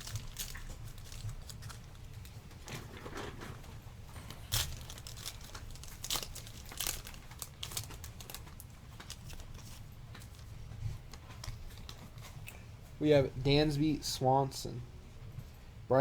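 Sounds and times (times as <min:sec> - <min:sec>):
foil wrapper tearing and crinkling: 0:00.0 - 0:02.7, 0:04.3 - 0:10.4.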